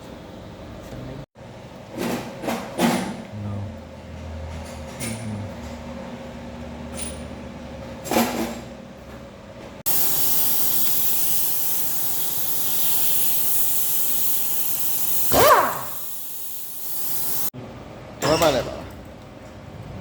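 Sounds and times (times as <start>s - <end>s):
loud hiss of escaping air: 9.9s - 17.5s.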